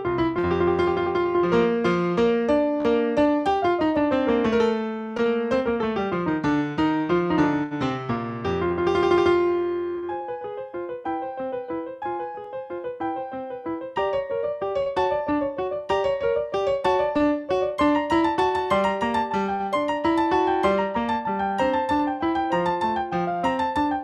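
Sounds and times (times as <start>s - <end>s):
piano playing quick runs: 0.0s - 24.0s.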